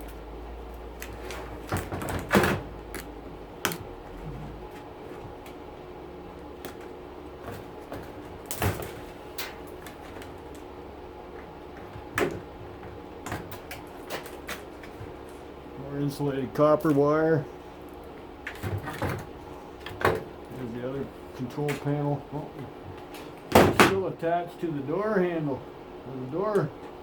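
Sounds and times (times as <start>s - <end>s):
knocks and clatter of handling parts: 1.0s - 5.6s
wire cutters snipping wire: 2.9s - 3.9s.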